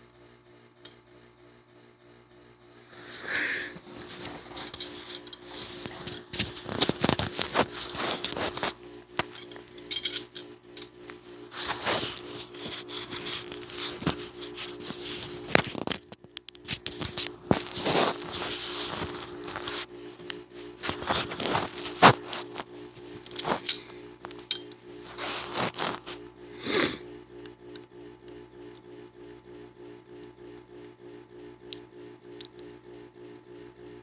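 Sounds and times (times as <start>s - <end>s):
steady low hum: 0.0s - 34.0s
pistol parts clicking and rattling: 9.2s - 11.0s.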